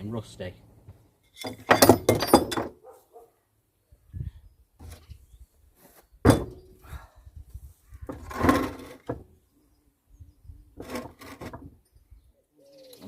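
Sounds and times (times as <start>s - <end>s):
vise scraping on workbench: 8.1s - 9.2s, 10.8s - 11.7s.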